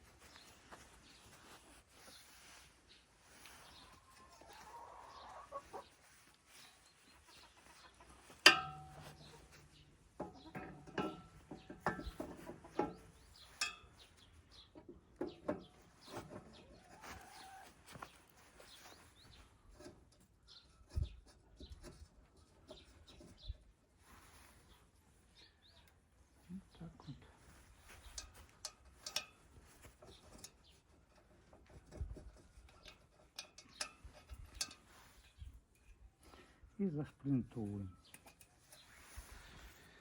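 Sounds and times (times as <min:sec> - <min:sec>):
metal clanks and knocks: 0:08.3 - 0:14.0.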